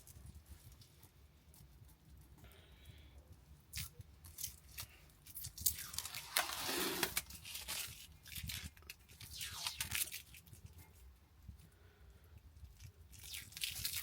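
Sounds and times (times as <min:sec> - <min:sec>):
plastic wrapping crinkling and tearing: 0:03.7 - 0:10.6, 0:12.8 - 0:14.0.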